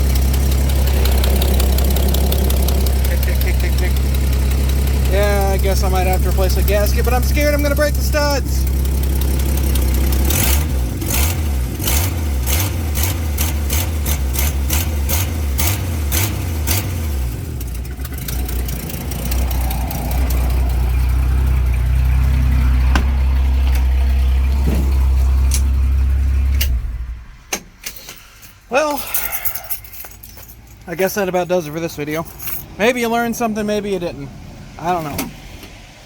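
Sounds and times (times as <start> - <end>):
car engine idling without muffler: 0.0 - 27.3
exhaust ticking: 0.0 - 27.8.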